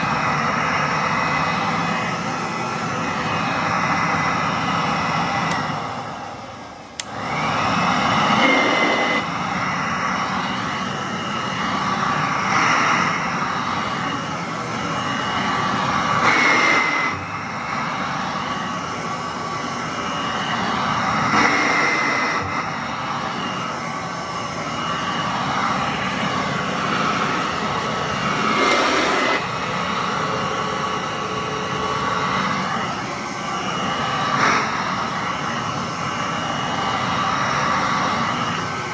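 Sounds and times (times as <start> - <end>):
vacuum cleaner motor whining: 0.0 - 38.9
vacuum cleaner switch click: 7.0 - 7.2.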